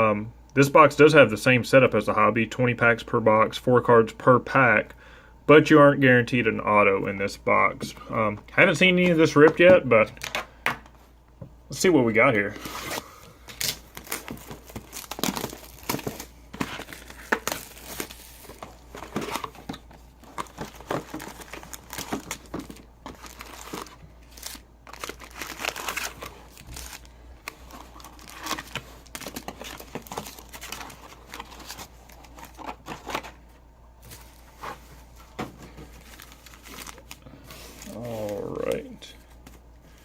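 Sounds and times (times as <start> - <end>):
packaging crinkling and tearing: 12.6 - 33.4, 35.2 - 39.0.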